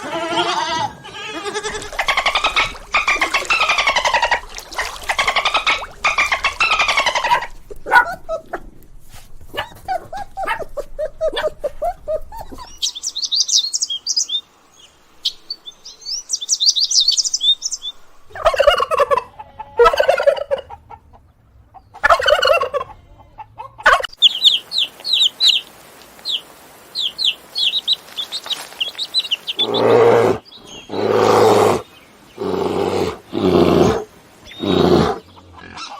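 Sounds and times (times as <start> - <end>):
turkey gobbling: 1.6 - 8.6, 18.3 - 25.6, 35.6 - 35.9.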